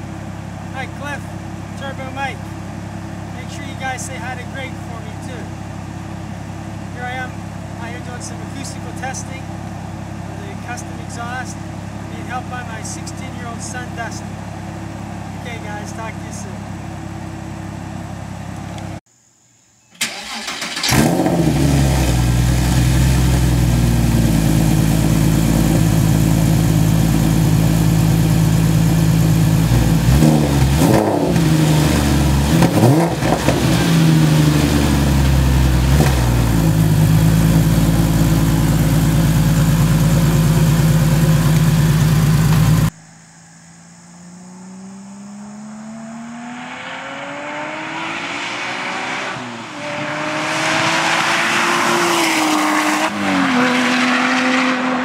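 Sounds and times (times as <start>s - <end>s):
car engine running loud: 0.0s - 19.0s, 20.1s - 55.0s
car accelerating: 20.0s - 55.0s.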